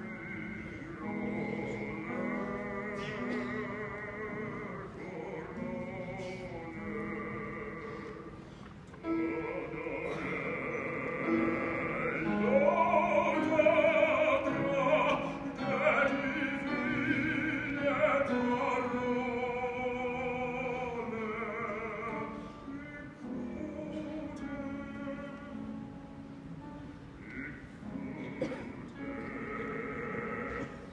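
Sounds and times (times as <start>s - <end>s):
choir singing: 9.0s - 20.3s.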